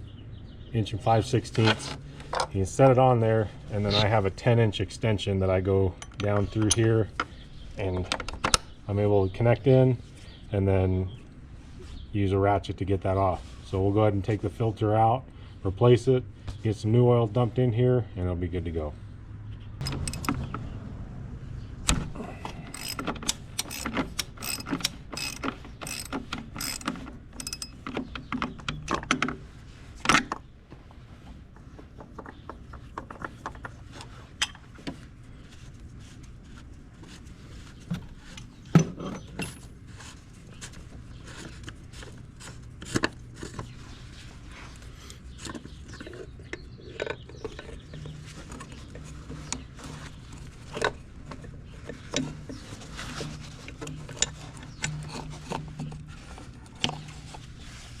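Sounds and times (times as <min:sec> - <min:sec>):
ratchet clicking: 0:19.8 - 0:20.4, 0:22.7 - 0:27.8.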